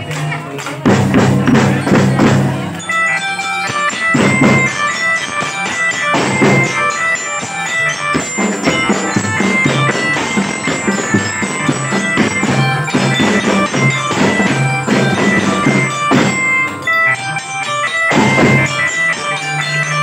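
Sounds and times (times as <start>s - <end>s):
snare and bass drums beat: 0.7s - 2.8s, 3.7s - 7.0s, 7.8s - 16.8s
bell lyra notes: 1.1s - 20.0s
reedy melodica melody: 1.8s - 20.0s.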